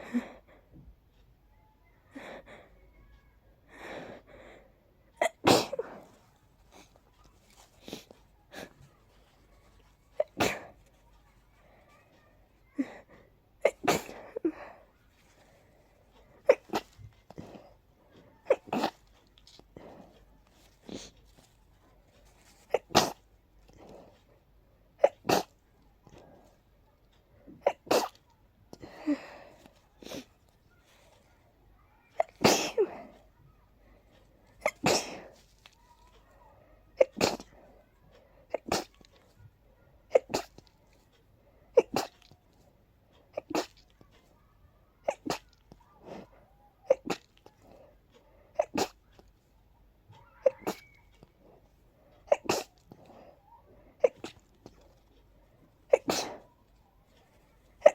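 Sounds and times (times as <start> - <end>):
person sneezing: 5.2 - 6.2, 10.2 - 10.8, 32.2 - 33.2, 52.3 - 53.3, 55.9 - 56.4.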